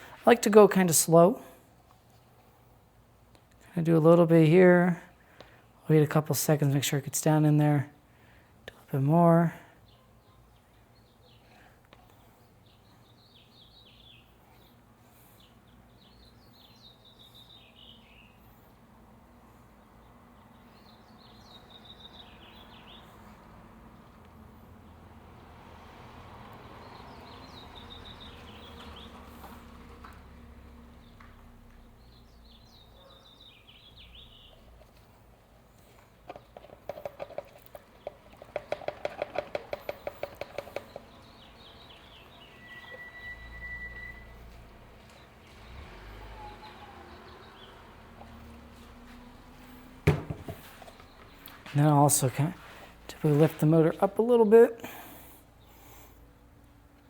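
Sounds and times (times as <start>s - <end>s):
birds chirping: 3.8s - 18.8s, 19.4s - 56.4s
rapid rattling bird chatter: 32.0s - 42.7s
short steady whistle: 42.5s - 44.5s
sharp knock: 50.1s - 50.6s.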